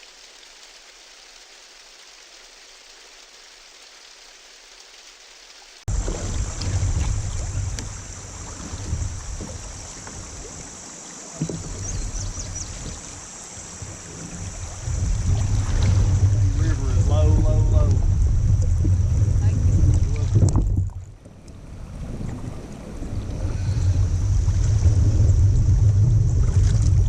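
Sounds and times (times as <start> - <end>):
water rushing around a kayak: 0.0 - 27.0
wind rumbling on microphone: 5.9 - 27.0.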